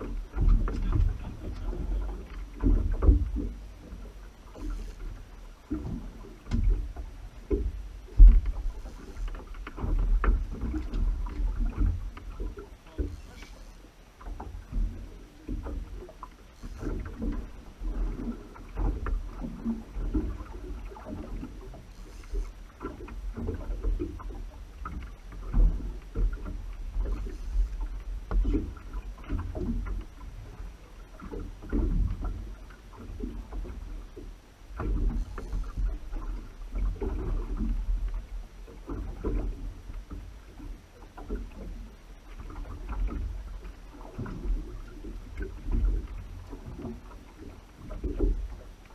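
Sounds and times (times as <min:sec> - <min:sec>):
low rumble: 0:00.0 - 0:13.8
water sloshing against boat: 0:00.0 - 0:48.9.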